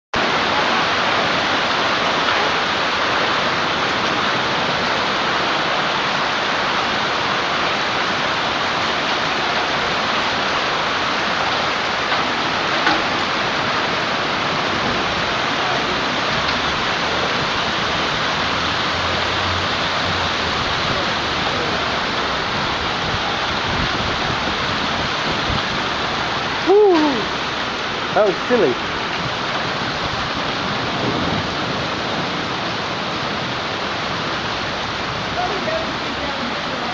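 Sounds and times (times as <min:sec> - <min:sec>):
hail and rain clattering: 0:00.2 - 0:36.9.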